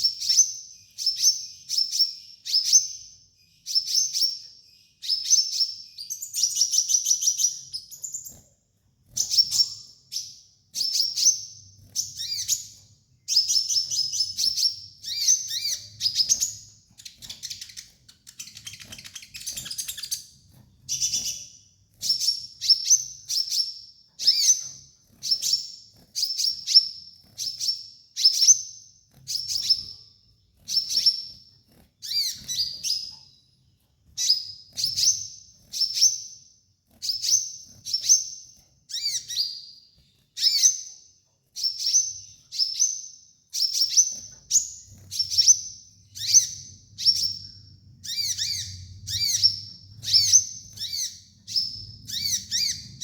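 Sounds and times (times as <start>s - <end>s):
sunbird chirping: 9.1s - 36.4s, 41.6s - 53.0s.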